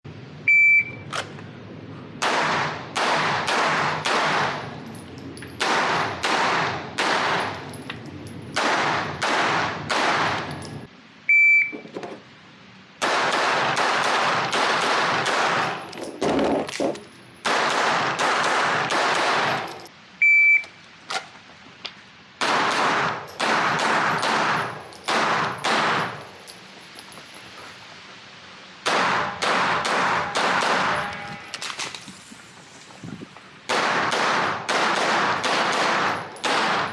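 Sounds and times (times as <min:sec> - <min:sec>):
short high start beep: 0:00.5 - 0:01.0, 0:11.3 - 0:11.8, 0:20.2 - 0:20.7
rapid pistol shots: 0:02.2 - 0:04.6, 0:05.6 - 0:07.6, 0:08.6 - 0:10.5, 0:13.0 - 0:15.8, 0:17.4 - 0:19.7, 0:22.4 - 0:26.2, 0:28.8 - 0:31.0, 0:33.7 - 0:36.9.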